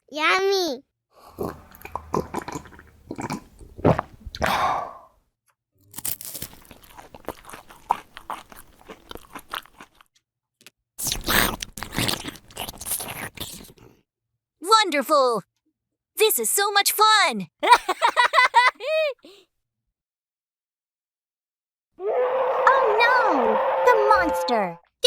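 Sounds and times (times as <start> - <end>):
crunchy chewing: 1.3 - 4.5, 5.8 - 10.2, 11.0 - 14.0.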